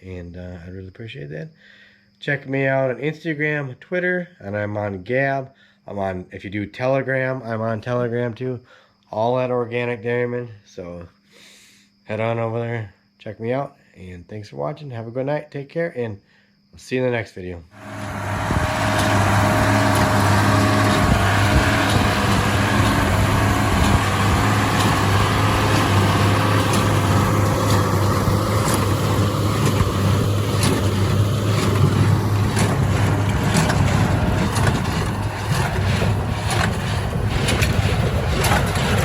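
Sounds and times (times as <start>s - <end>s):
engine running steadily: 17.8s - 39.0s
sharp irregular clicks: 19.0s - 39.0s.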